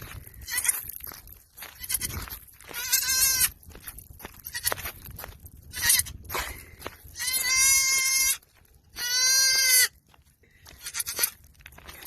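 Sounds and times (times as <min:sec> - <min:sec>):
goat kid bleating: 0:00.3 - 0:00.9, 0:01.6 - 0:03.6, 0:04.3 - 0:05.0, 0:05.6 - 0:10.0, 0:10.7 - 0:11.4.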